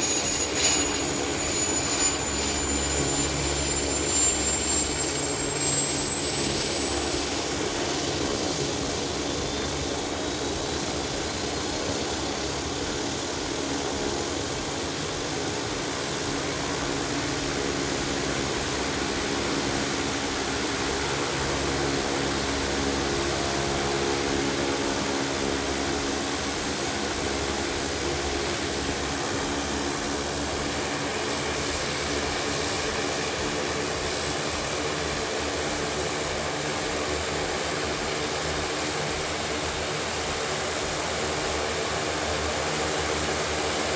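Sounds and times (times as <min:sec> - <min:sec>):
turboprop engines whining: 0:00.0 - 0:11.4.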